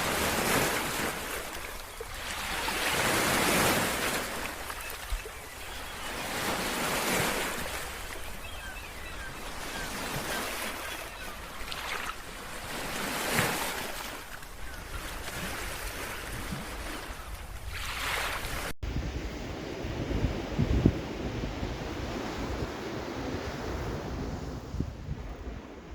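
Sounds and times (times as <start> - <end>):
sea waves breaking on shore: 0.0 - 25.9
wind on microphone: 14.6 - 25.9.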